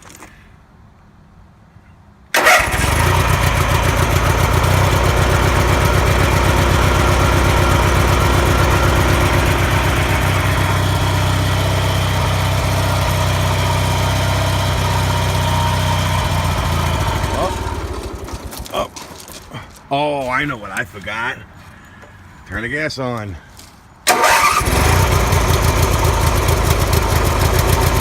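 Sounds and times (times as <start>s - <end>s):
lawn tractor engine starting: 2.3s - 18.9s, 24.0s - 28.0s.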